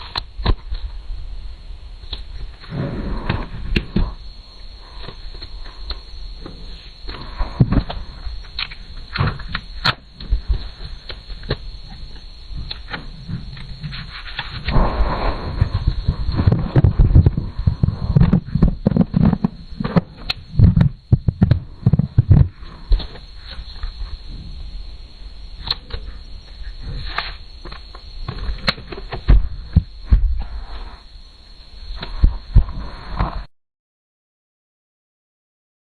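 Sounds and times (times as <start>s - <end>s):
low rumble: 11.7s - 27.6s
sharp bang: 14.7s - 17.2s.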